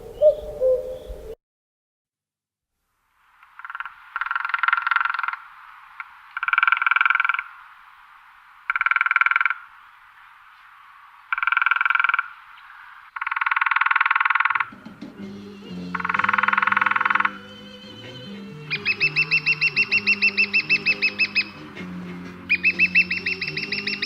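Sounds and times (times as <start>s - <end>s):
animal rattling croaks: 3.4s - 7.6s, 8.7s - 9.7s, 11.3s - 12.4s, 13.1s - 14.8s, 15.9s - 17.4s
faint chorus of croaking calls: 3.4s - 24.0s.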